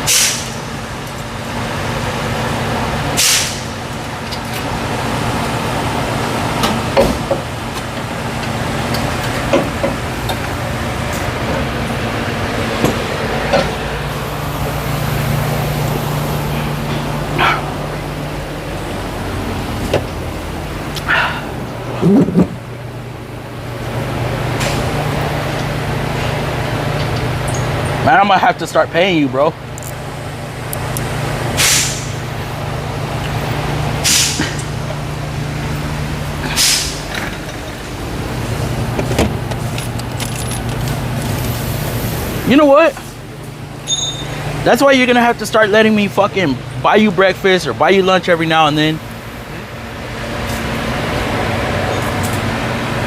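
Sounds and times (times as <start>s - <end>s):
hissing air bursts: 0.0s - 0.6s, 3.2s - 3.7s, 31.6s - 32.2s, 34.0s - 34.6s
mechanical hum: 0.0s - 53.0s
metal tools clinking: 39.5s - 41.5s, 43.9s - 44.4s.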